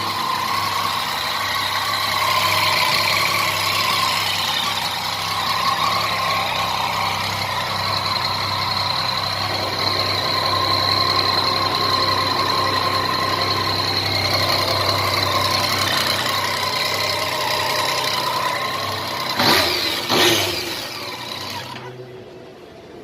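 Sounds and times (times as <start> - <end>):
motorcycle engine idling and revving: 0.0 - 23.0.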